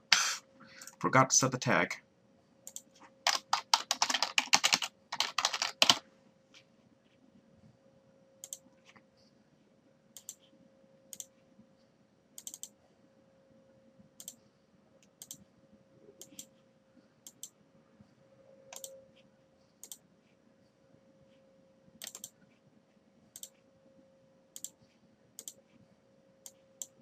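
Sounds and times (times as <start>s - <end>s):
faint steady hum: 0.0s - 27.0s
computer keys clicking: 2.6s - 6.0s, 8.4s - 9.0s, 10.2s - 10.4s, 11.1s - 11.3s, 12.4s - 12.8s, 14.2s - 14.4s, 15.0s - 15.4s, 16.2s - 16.5s, 17.2s - 17.6s, 18.7s - 19.0s, 19.8s - 20.0s, 22.0s - 22.4s, 23.3s - 23.6s, 24.5s - 24.8s, 25.4s - 25.6s
mouse clicks: 8.4s - 9.0s, 10.2s - 10.4s, 11.1s - 11.3s, 12.4s - 12.8s, 15.0s - 15.4s, 17.2s - 17.6s, 18.7s - 19.0s, 19.8s - 20.0s, 22.0s - 22.4s, 24.6s - 24.8s, 25.4s - 25.6s.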